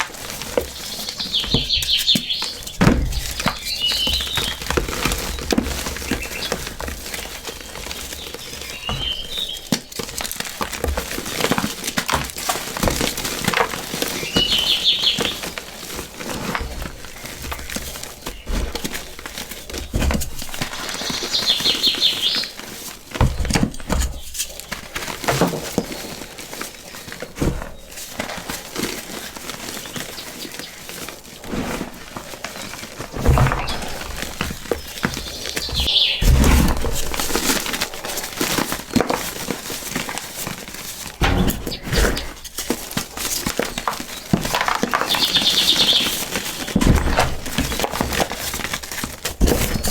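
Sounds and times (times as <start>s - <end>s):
crumbly block crunching: 0.0s - 49.9s
birds chirping: 0.4s - 10.2s, 13.8s - 16.0s, 16.6s - 22.7s, 32.2s - 40.2s, 41.0s - 47.9s.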